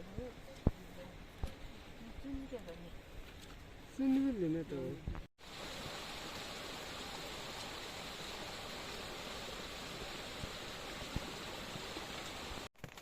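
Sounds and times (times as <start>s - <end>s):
heavy rain falling: 5.4s - 12.7s.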